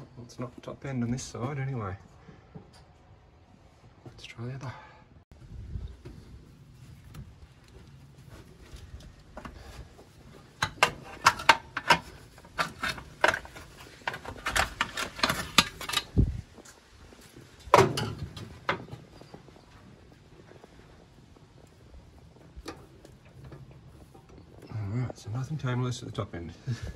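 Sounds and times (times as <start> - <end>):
metal clatter: 10.4 - 16.4, 17.6 - 19.3
metal tools clinking: 10.6 - 16.2.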